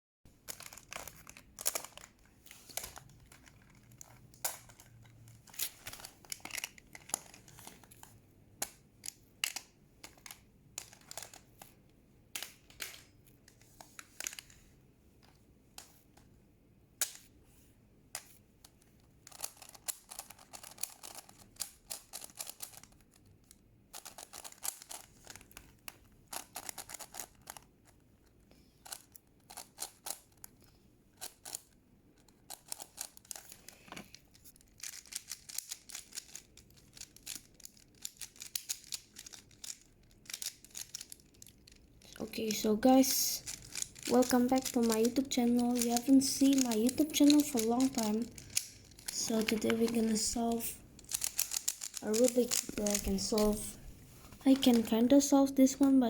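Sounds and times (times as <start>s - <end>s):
puzzle cube layers clicking: 2.7s - 11.8s, 19.2s - 27.7s, 34.7s - 41.8s, 42.6s - 53.8s.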